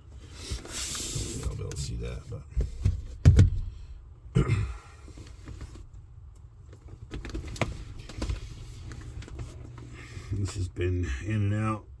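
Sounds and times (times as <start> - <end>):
low steady hum: 0.0 - 12.0
speaker box knocks and clicks: 2.8 - 3.7.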